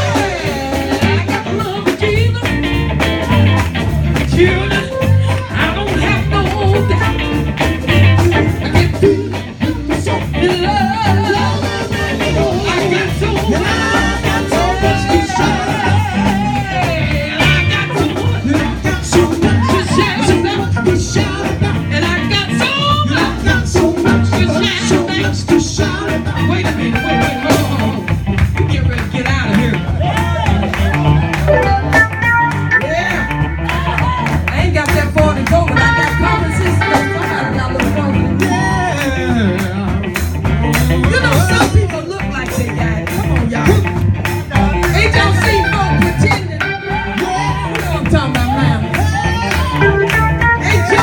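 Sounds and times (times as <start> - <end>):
person singing: 0.0 - 28.1, 31.0 - 43.9, 44.5 - 51.0
live band playing: 0.0 - 51.0.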